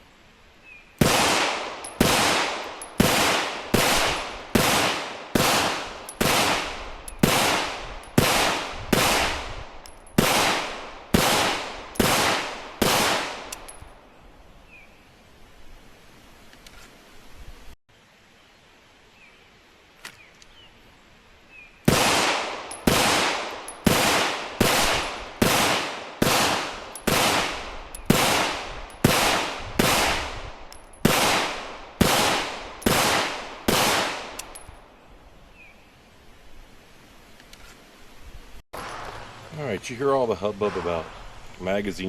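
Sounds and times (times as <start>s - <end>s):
gunshots with echo: 1.0s - 9.5s, 10.2s - 13.5s, 21.9s - 30.4s, 31.1s - 34.4s.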